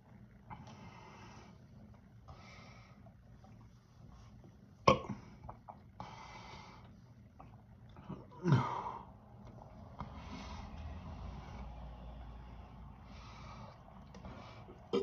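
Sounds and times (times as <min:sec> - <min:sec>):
loud breaths: 0:06.0 - 0:07.0, 0:08.4 - 0:15.0
man coughing: 0:08.2 - 0:09.0.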